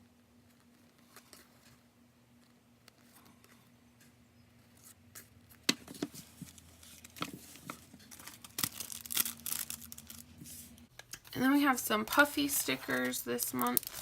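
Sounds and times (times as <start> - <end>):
paper and packaging rustling: 4.7 - 14.0.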